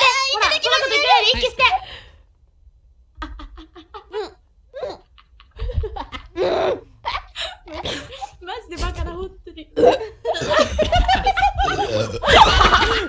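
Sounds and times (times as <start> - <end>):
high-pitched laughter: 10.4 - 13.0.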